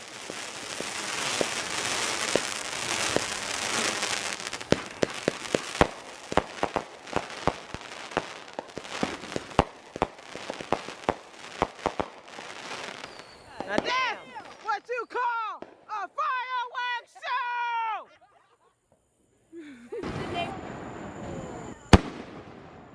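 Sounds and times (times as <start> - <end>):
fireworks pops and bangs: 0.0 - 14.9, 15.6 - 15.9, 20.0 - 22.9
fireworks crackling hiss: 0.0 - 17.9, 18.6 - 22.9.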